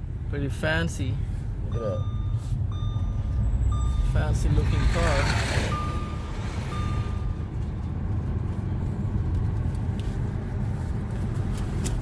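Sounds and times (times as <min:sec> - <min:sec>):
vehicle engine rumbling: 0:00.0 - 0:12.0
reversing alarm beep: 0:01.7 - 0:07.4.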